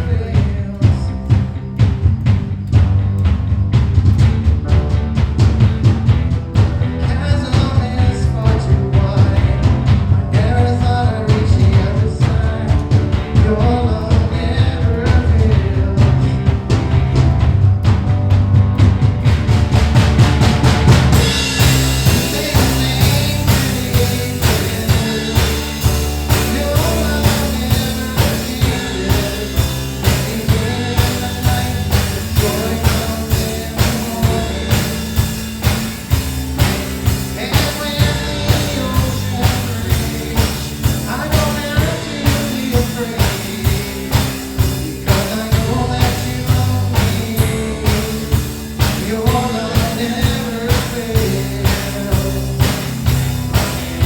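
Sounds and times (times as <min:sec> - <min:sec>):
drum kit beat: 0:00.0 - 0:54.0
rock band playing: 0:00.0 - 0:54.0
person singing: 0:06.9 - 0:16.7, 0:21.1 - 0:35.9, 0:37.1 - 0:53.1.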